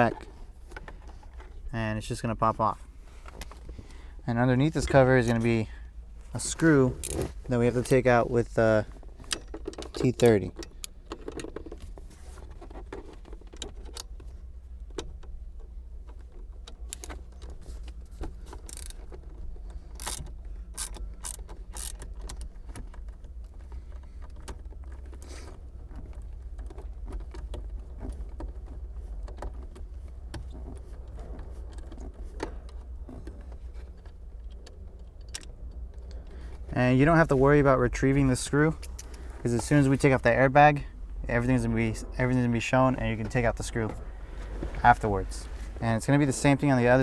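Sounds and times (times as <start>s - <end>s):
steady low hum: 0.0s - 10.9s, 28.8s - 47.0s
ratchet clicking: 7.0s - 8.0s, 18.5s - 19.0s, 19.9s - 22.5s.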